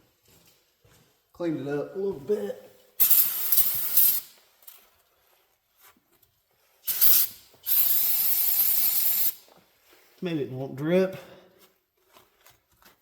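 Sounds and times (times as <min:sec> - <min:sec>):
aerosol spray hissing: 0:03.0 - 0:04.4, 0:06.9 - 0:09.5.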